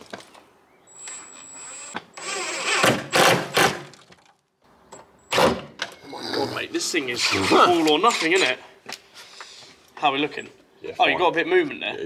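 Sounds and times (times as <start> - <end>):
cordless drill driving screw: 1.0 - 3.8.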